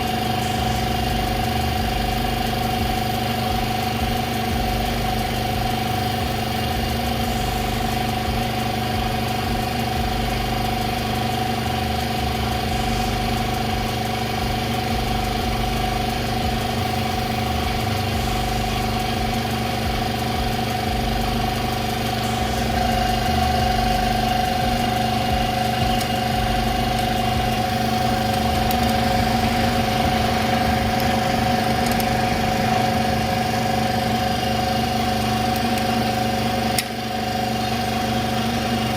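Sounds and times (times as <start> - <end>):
small engine idling: 0.0 - 38.9.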